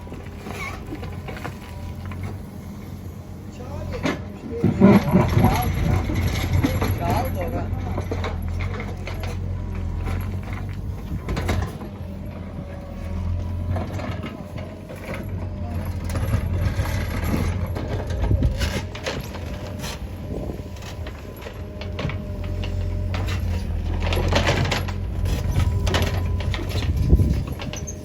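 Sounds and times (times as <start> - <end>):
diesel engine running: 0.0 - 28.0
machine knocks and clatter: 10.1 - 11.9, 21.1 - 27.9.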